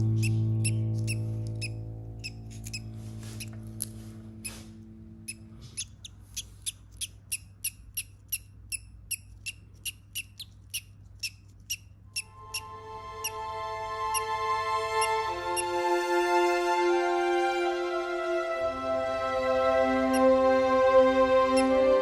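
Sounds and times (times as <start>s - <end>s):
parrot chick peeping: 0.0s - 3.6s, 5.2s - 13.4s
background music: 0.0s - 5.6s, 12.2s - 22.0s.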